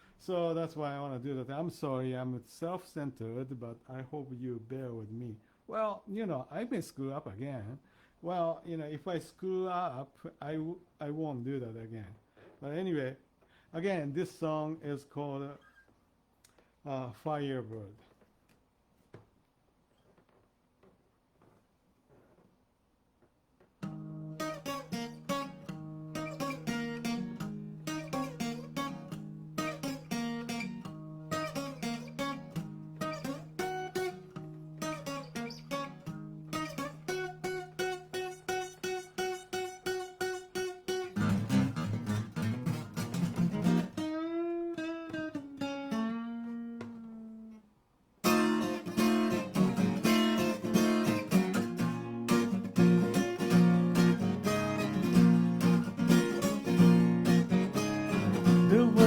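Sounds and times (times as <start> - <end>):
acoustic guitar playing: 23.8 - 59.0.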